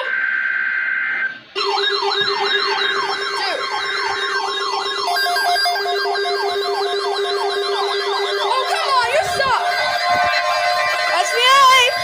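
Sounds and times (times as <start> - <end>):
weather radio alert alarms: 0.0 - 12.0
pulsing two-tone beep: 1.2 - 12.0.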